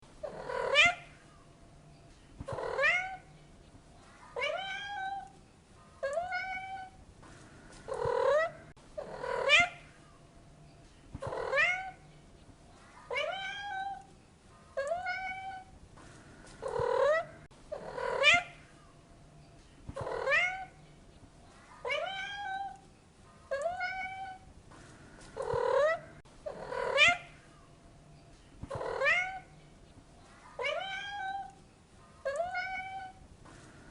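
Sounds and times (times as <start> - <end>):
cat meowing: 4.4 - 5.3, 6.0 - 7.0, 11.4 - 12.0, 13.1 - 14.1, 21.8 - 22.8, 23.5 - 24.4, 28.7 - 29.5, 30.6 - 31.6, 32.3 - 33.2.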